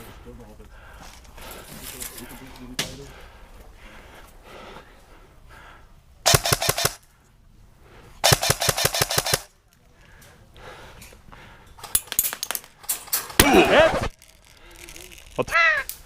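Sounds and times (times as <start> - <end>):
airsoft guns firing bursts: 6.3 - 7.0, 8.2 - 9.5.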